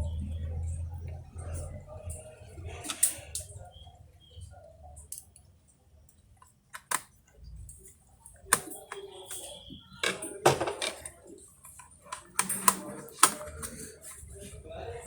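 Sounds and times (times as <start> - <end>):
screwdriver clicks and taps: 6.7 - 7.1.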